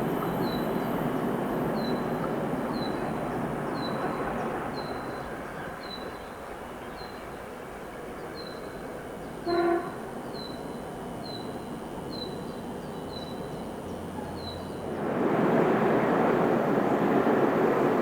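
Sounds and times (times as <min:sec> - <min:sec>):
train running noise: 0:00.0 - 0:18.0
train horn toot: 0:09.4 - 0:10.2.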